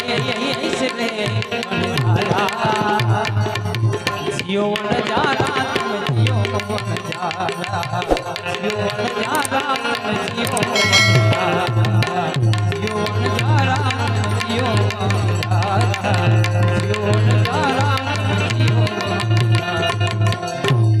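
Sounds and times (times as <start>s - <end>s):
sliding melody line: 10.8s - 12.6s.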